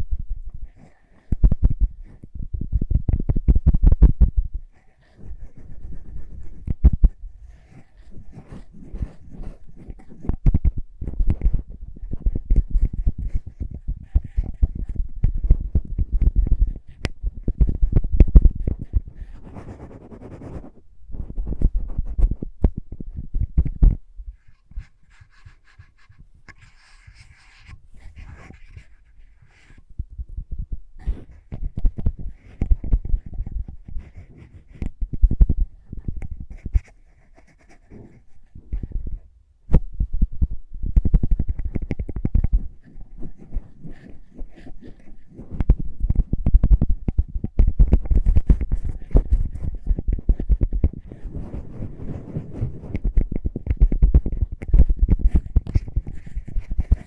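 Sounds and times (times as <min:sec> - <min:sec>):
wet lip and mouth clicks: 0:40.9 - 0:43.2, 0:43.8 - 0:57.0.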